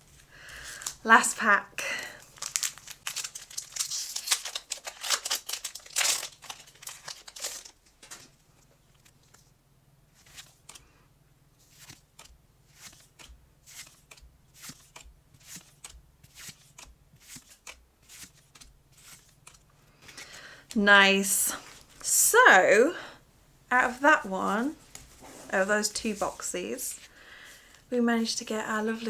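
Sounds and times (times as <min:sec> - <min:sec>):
foil wrapper crinkling and tearing: 0:02.2 - 0:08.3
cards sliding and flipping: 0:11.6 - 0:20.4.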